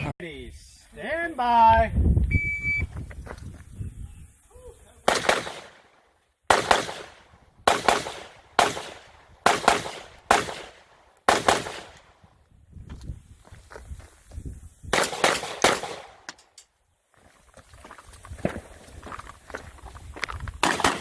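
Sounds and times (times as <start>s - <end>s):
gunshots: 5.0s - 12.2s, 14.9s - 16.3s, 20.6s - 21.0s.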